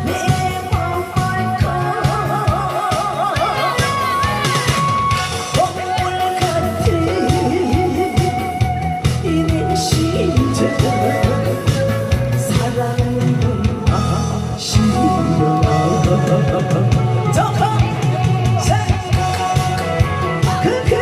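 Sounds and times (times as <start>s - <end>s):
drum beat: 0.0s - 9.3s, 9.9s - 21.0s
guitar: 0.0s - 21.0s
person singing: 0.0s - 21.0s.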